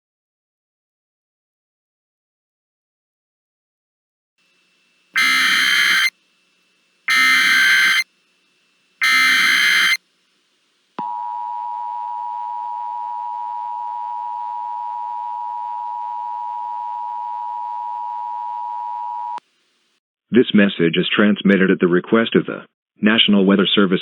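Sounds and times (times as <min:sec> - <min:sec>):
screeching digital header bursts: 0:05.2 - 0:06.1, 0:07.1 - 0:08.1, 0:09.0 - 0:10.0
two-tone alert signal: 0:05.2 - 0:06.1, 0:07.1 - 0:08.0, 0:09.0 - 0:10.0.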